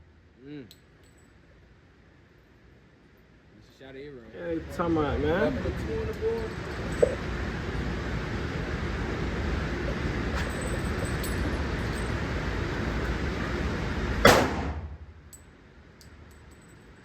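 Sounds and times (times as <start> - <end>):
steady background noise: 0.0 - 17.0
loud gunshot with echo: 14.2 - 15.0.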